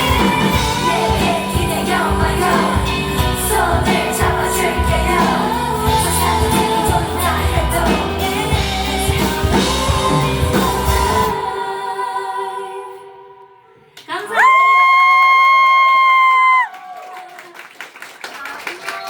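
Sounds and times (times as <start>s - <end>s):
live pop band playing: 0.0s - 11.6s
woman singing: 0.0s - 13.4s.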